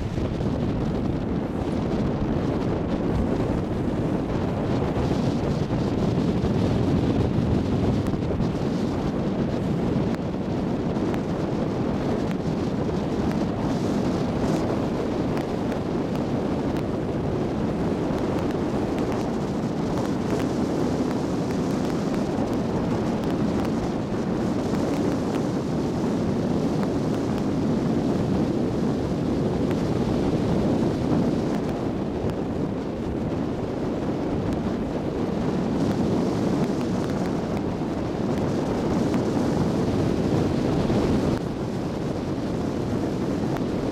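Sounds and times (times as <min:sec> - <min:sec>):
water rushing: 0:00.0 - 0:17.0
boat engine rushing: 0:00.0 - 0:43.9
wind buffeting microphone: 0:00.0 - 0:43.9.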